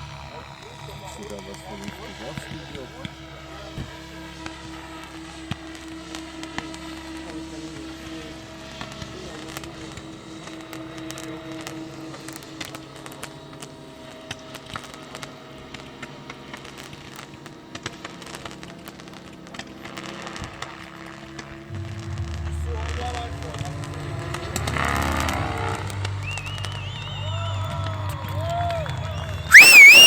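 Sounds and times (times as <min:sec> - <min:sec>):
fireworks crackling: 0:29.5 - 0:30.0.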